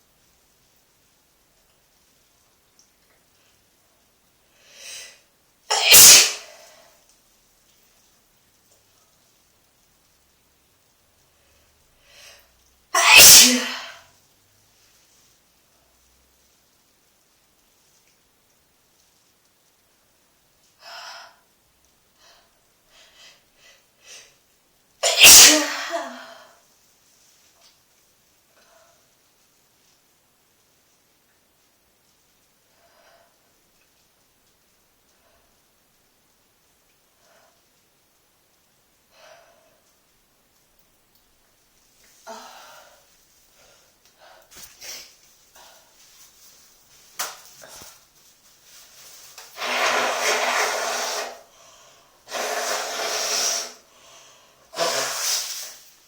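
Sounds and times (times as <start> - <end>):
person sneezing: 5.7 - 6.7, 13.0 - 14.0, 25.0 - 26.5, 54.8 - 55.8
person breathing: 51.5 - 53.0, 53.6 - 55.8.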